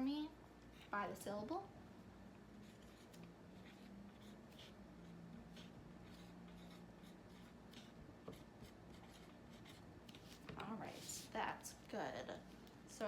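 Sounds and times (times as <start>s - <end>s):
low steady hum: 0.0s - 13.0s
writing tool scratching: 2.6s - 10.5s.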